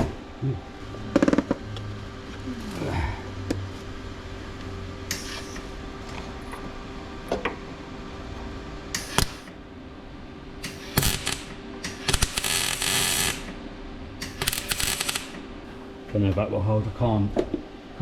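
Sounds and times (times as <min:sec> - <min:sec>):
steady hum: 0:00.0 - 0:18.0
welding bursts: 0:09.0 - 0:09.5, 0:10.6 - 0:13.5, 0:14.2 - 0:15.4.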